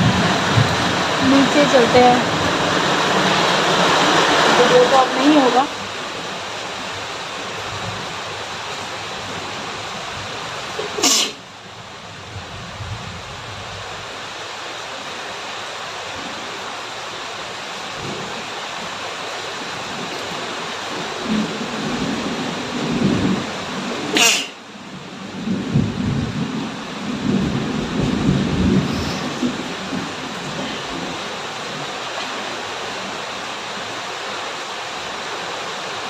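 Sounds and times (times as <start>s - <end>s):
rain hissing: 0.0s - 36.0s
woman sneezing: 11.0s - 11.4s, 24.2s - 24.6s.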